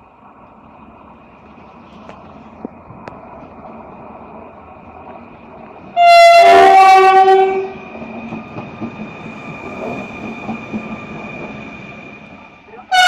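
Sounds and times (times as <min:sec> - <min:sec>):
train running with high whine: 0:00.0 - 0:13.0
train horn blast: 0:06.0 - 0:07.8.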